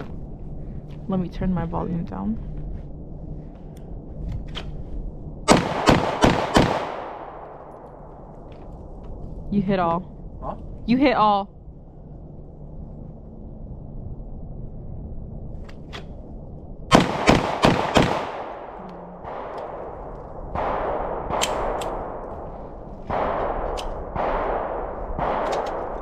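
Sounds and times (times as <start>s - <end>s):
dull gunshots with echoing tails: 5.1s - 9.0s, 15.9s - 26.0s
quick pistol shots: 5.5s - 7.4s, 16.9s - 18.7s, 23.1s - 26.0s.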